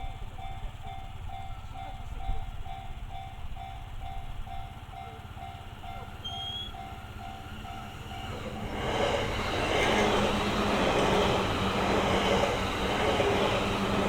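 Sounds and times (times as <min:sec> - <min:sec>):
electric train rushing: 0:06.2 - 0:14.0.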